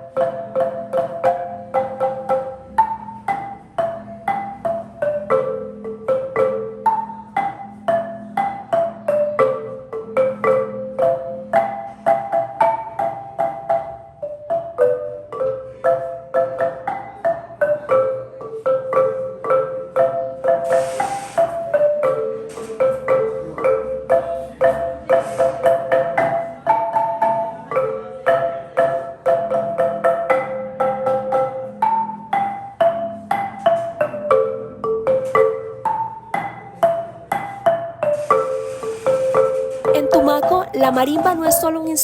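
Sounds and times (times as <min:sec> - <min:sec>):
marimba melody: 0:00.0 - 0:42.0.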